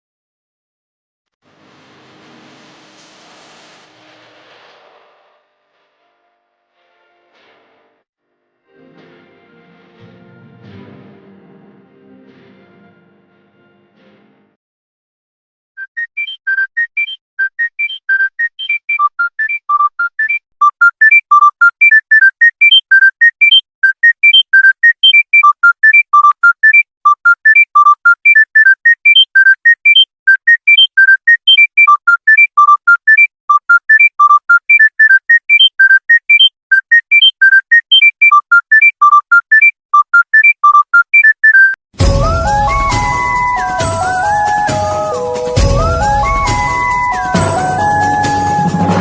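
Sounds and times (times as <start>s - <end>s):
synthesized phone ringtone melody: 15.9s - 49.0s.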